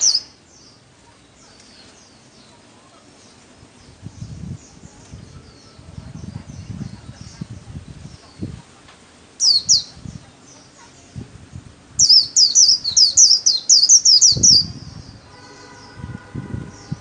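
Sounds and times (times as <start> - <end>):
bird singing whistled notes: 0.0 - 0.8, 9.4 - 10.2, 12.0 - 16.0.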